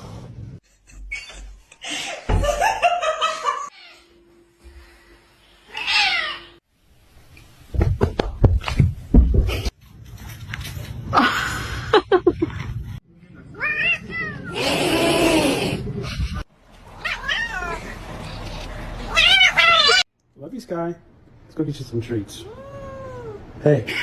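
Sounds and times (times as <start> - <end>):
cats meowing: 5.7 - 6.6, 13.5 - 15.7, 16.8 - 20.0, 22.4 - 23.5
person laughing: 11.2 - 12.6.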